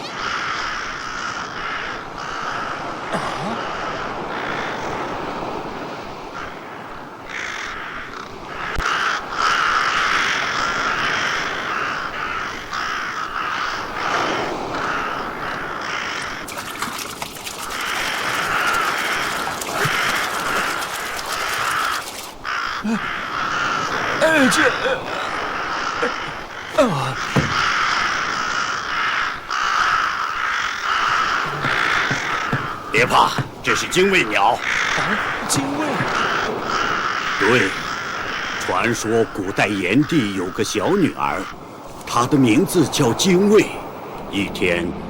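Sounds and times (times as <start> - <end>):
birds cawing: 0.0 - 41.9.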